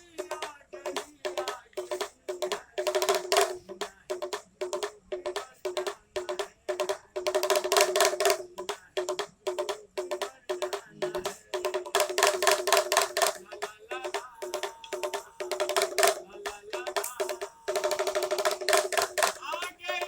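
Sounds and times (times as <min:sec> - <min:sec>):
pellet drum rattling: 0:00.0 - 0:20.0.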